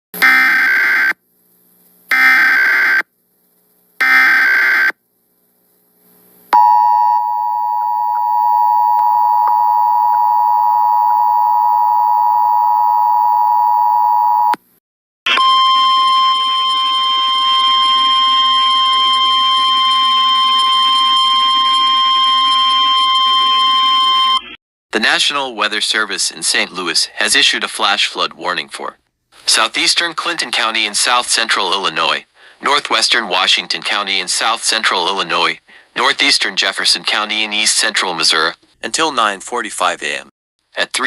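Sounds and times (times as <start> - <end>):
steady single tone: 6.5 - 14.5.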